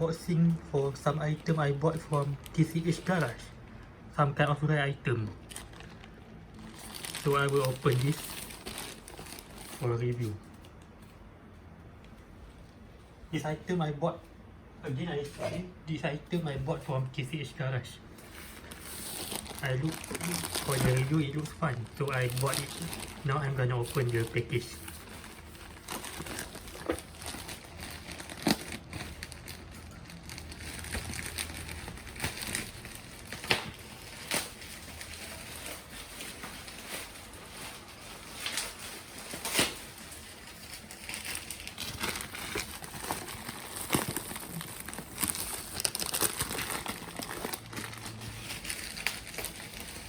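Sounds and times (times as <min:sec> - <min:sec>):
packaging crinkling and rustling: 0:05.4 - 0:11.2, 0:18.2 - 0:50.0.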